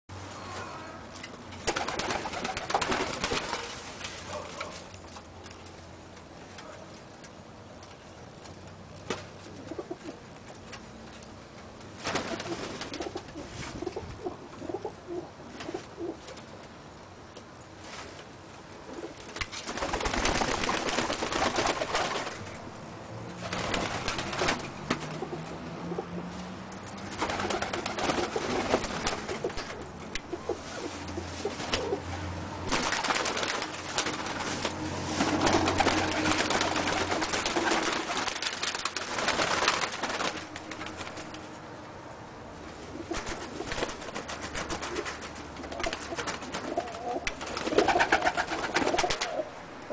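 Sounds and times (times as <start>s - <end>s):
loud rushing rustling noise: 1.6s - 4.4s, 19.3s - 22.7s, 23.4s - 25.3s, 26.3s - 41.6s, 42.7s - 46.8s
pigeons cooing: 9.4s - 10.4s, 12.3s - 16.4s, 27.1s - 33.0s, 42.9s - 49.9s.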